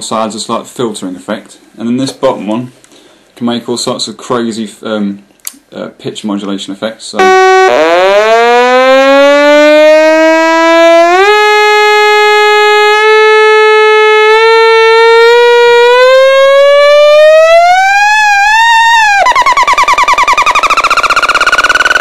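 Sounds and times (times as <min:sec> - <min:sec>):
buzzy synth tone gliding: 0:07.2 - 0:22.0.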